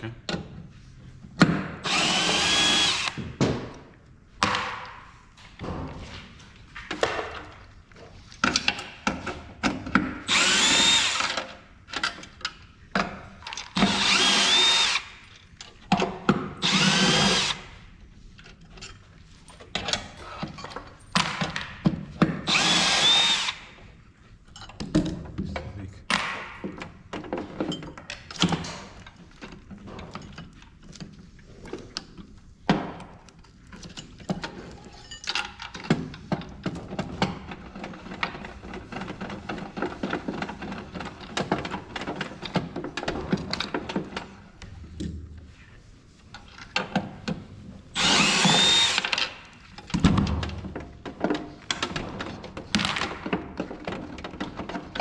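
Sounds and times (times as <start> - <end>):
power screwdriver whining: 1.8 - 3.2, 10.3 - 11.4, 13.8 - 15.2, 16.6 - 17.7, 22.5 - 23.7, 48.0 - 49.3
screws and parts clattering: 33.4 - 44.4.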